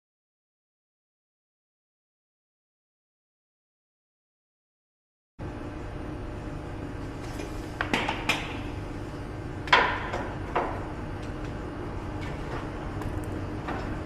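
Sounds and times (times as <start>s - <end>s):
steady low hum: 5.4s - 14.0s.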